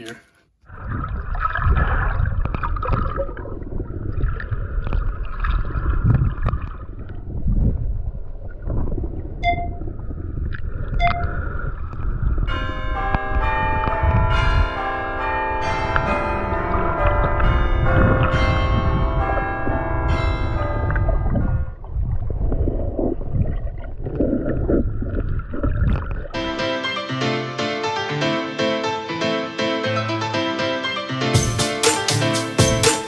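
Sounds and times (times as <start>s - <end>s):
bell-like chiming music: 12.5s - 21.7s.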